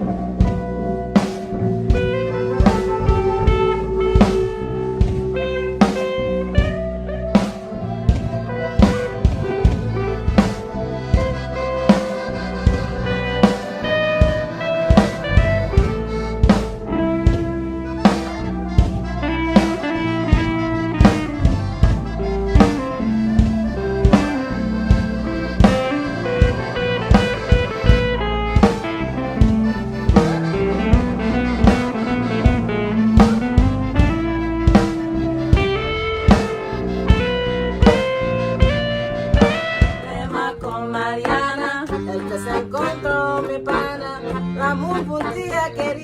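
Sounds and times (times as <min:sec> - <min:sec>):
drum-like strikes: 0:00.0 - 0:40.3
instrumental band music: 0:00.0 - 0:46.0
sustained pitched chords: 0:00.0 - 0:46.0.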